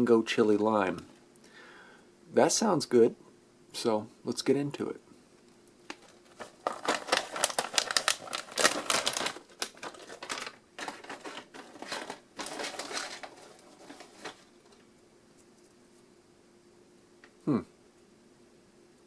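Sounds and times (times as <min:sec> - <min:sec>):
plastic snack bag crinkling: 0:05.9 - 0:14.9.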